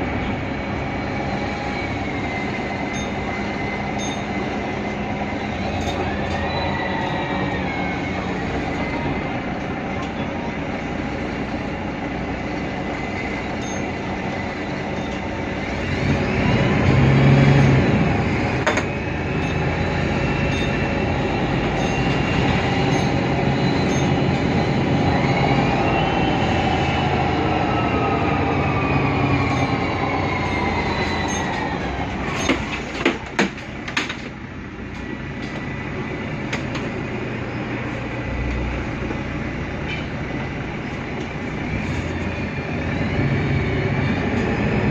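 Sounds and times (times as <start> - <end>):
bus diesel engine and gearbox whine: 0.0 - 44.9.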